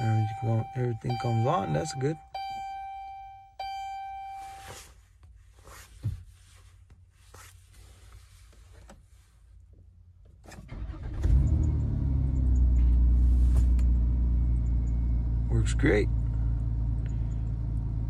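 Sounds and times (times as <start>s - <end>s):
dashboard chime: 0.0s - 4.8s
engine cranking and starting: 10.4s - 13.0s
car engine idling: 10.7s - 18.0s.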